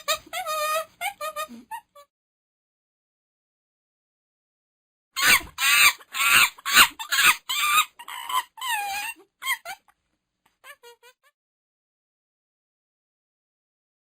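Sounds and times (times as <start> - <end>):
monkey calling: 5.2 - 9.8.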